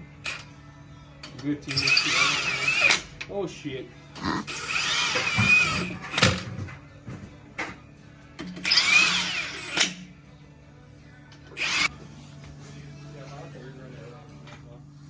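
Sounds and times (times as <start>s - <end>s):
power drill whirring: 1.7s - 3.0s, 4.5s - 6.4s, 8.6s - 10.0s, 11.5s - 11.9s
music playing: 3.8s - 14.8s.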